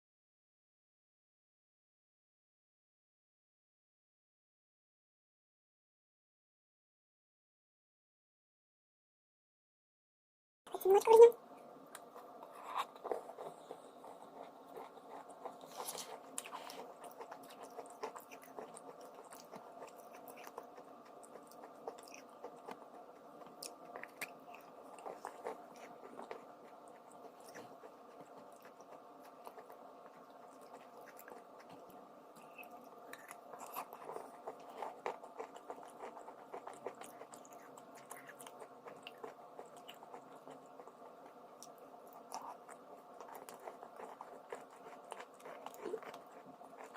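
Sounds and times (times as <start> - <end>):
person chewing crunchy food: 11.9 - 46.9.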